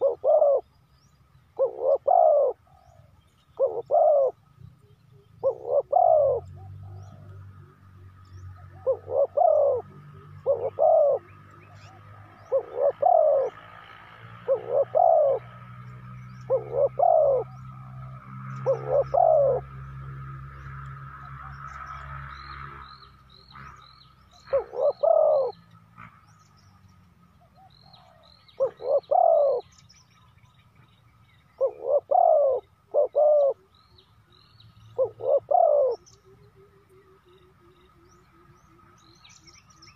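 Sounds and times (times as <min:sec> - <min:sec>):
dove cooing: 0:00.0 - 0:00.8, 0:01.5 - 0:07.4, 0:08.4 - 0:15.8, 0:16.4 - 0:20.0, 0:24.3 - 0:25.6, 0:27.4 - 0:29.8, 0:31.6 - 0:33.8, 0:34.9 - 0:37.7.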